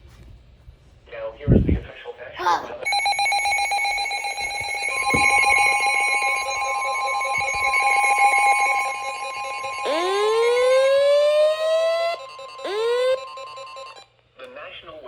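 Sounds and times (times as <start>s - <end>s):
long steady alarm tone: 2.8s - 14.1s
pulsing electronic alarm buzz: 2.9s - 14.1s
rising siren sweep: 3.6s - 14.0s.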